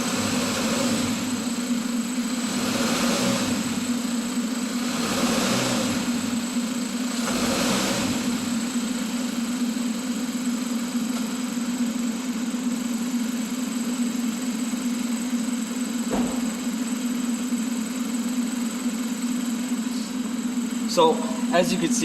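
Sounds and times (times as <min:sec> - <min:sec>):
car engine running: 0:00.0 - 0:22.0.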